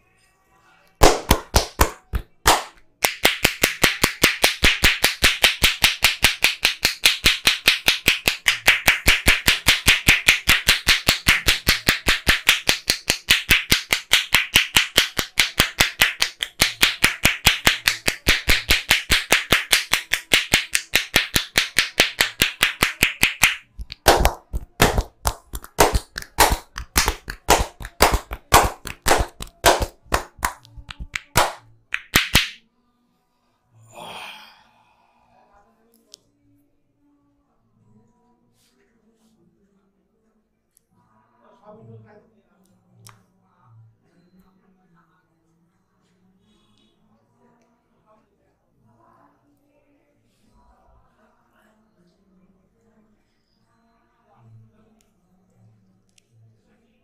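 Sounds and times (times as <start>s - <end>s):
palms slapping skin: 1.0s - 32.6s.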